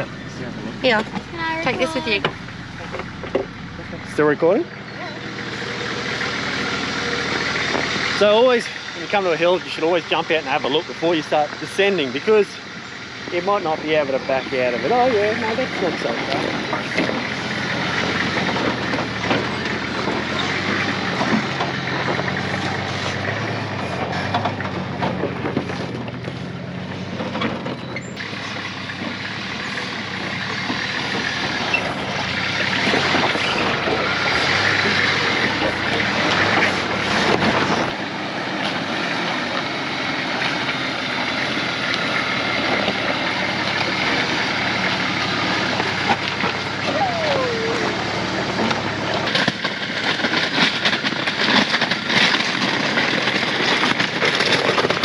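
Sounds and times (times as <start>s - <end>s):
engine running at low revs: 0.0s - 55.0s
tyres crunching over rocks: 15.0s - 46.9s, 47.8s - 55.0s.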